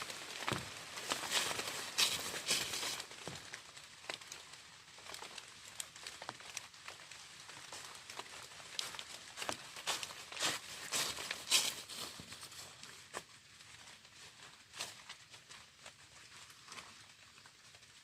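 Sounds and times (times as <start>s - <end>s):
crinkling rustles: 0.0s - 18.0s.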